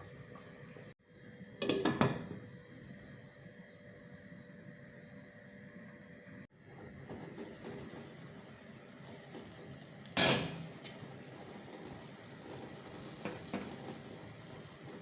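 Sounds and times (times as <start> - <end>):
faint cooking hiss: 0.0 - 15.0.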